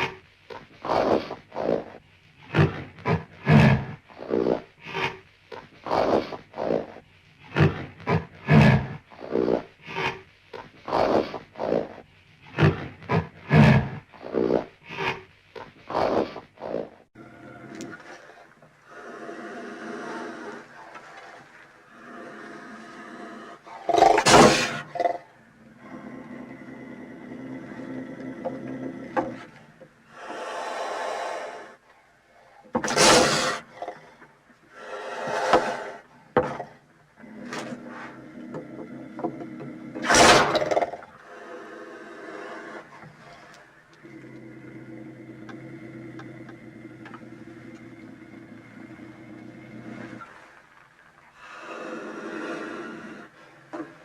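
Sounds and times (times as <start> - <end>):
animal snarl: 0.0 - 0.2, 0.8 - 5.2, 5.8 - 15.3, 15.9 - 31.8, 32.4 - 50.5
low rough growl: 16.0 - 31.8, 32.4 - 50.7, 51.3 - 53.9
long breathy hiss: 17.9 - 28.2, 29.0 - 36.4, 41.1 - 54.0.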